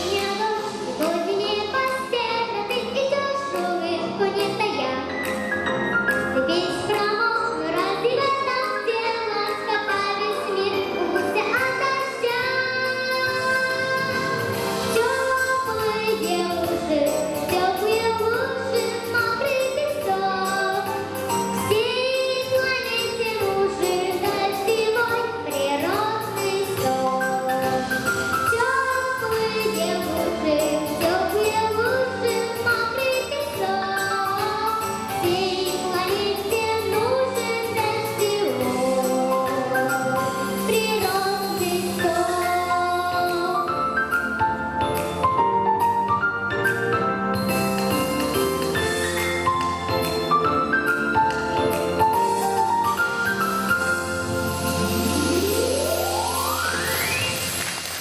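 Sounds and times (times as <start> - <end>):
girl singing pop song: 0.0 - 46.2
backing track: 0.0 - 58.0.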